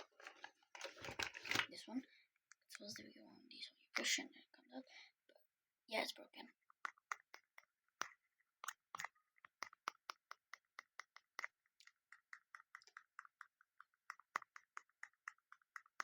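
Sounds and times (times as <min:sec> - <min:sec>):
fidget toy clicking: 0:06.7 - 0:16.0.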